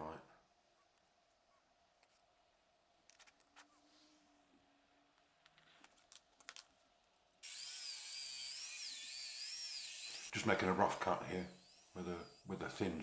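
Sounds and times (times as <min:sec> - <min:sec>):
power tool whine: 0:07.4 - 0:13.0.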